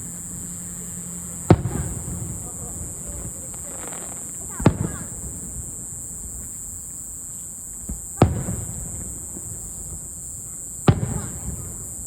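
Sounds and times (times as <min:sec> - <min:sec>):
firework shells bursting: 0:00.0 - 0:07.0
insects chirring: 0:00.0 - 0:12.0.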